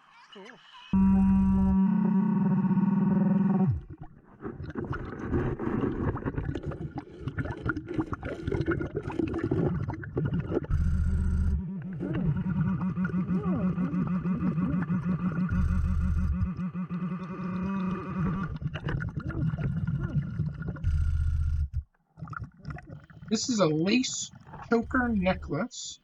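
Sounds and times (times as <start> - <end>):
low pulsing hum: 1.0 - 3.9, 10.7 - 13.6, 15.4 - 17.9
regulator bubbles gurgling: 3.1 - 25.9.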